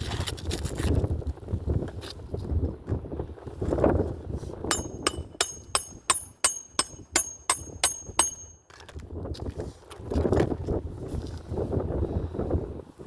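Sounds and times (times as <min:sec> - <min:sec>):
hammer striking nail with metallic ring: 0:04.7 - 0:08.8.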